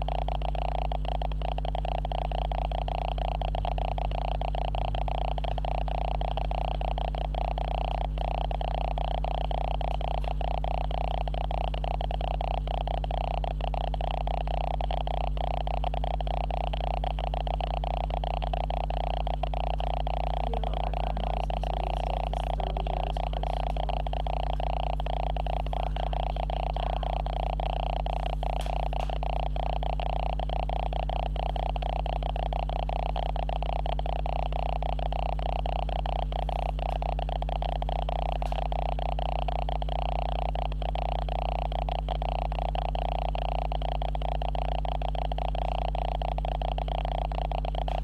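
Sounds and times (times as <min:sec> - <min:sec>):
camera electrical hum: 0:00.0 - 0:48.0.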